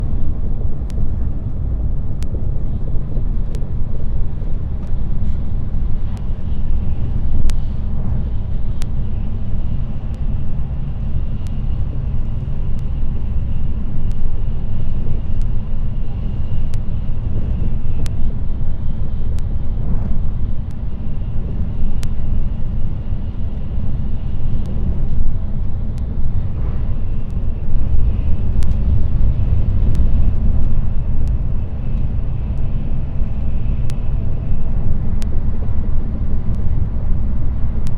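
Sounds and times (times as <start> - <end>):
train rumbling at speed: 0.0 - 37.9.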